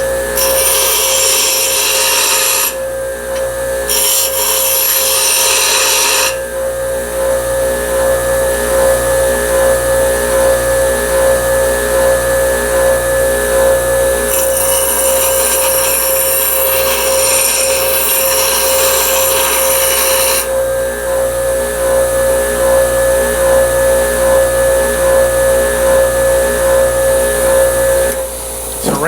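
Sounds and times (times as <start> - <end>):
steel grinding on abrasive: 0.0 - 2.8, 3.9 - 6.4.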